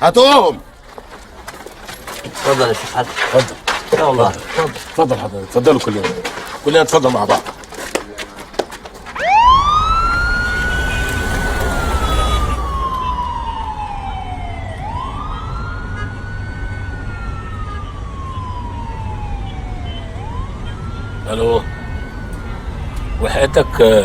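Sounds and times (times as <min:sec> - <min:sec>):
vehicle engine rumbling: 0:00.6 - 0:24.0
police siren wailing: 0:09.1 - 0:24.0.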